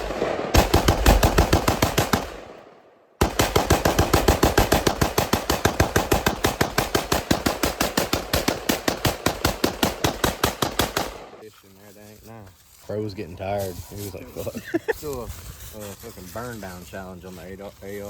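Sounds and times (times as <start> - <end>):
rapid rifle gunfire: 0.0 - 11.4.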